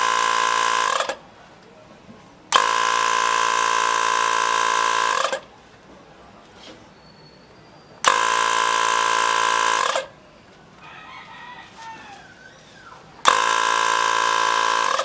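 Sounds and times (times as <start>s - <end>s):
air compressor buzzing: 0.0s - 1.3s, 2.5s - 5.6s, 8.0s - 10.2s, 13.2s - 15.0s.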